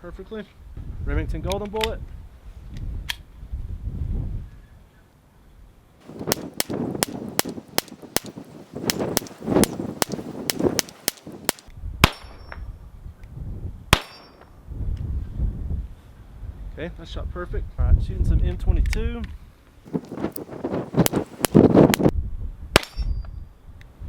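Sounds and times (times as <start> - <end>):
pistol shots: 6.2 - 12.5, 13.9 - 14.4.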